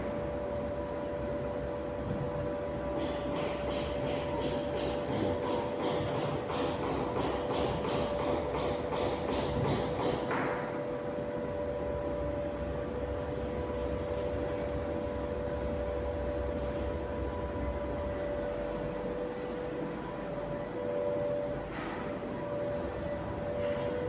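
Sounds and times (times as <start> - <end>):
steady mechanical hum: 0.0 - 24.0.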